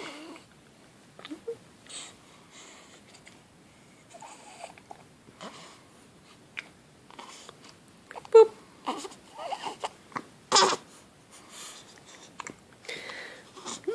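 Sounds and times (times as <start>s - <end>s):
baby crying and whimpering: 8.2s - 10.8s
baby hiccup: 8.9s - 10.8s.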